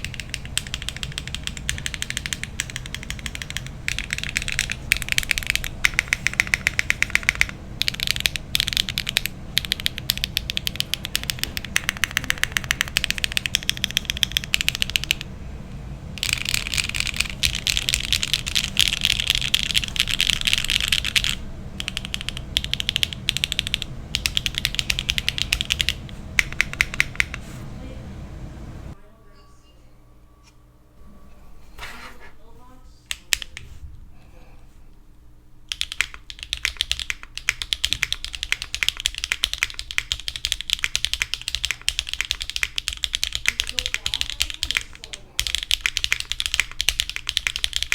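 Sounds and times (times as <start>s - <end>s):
fast typing on mechanical keyboard: 0.0s - 15.2s, 16.2s - 27.5s, 33.1s - 33.6s, 35.7s - 47.9s.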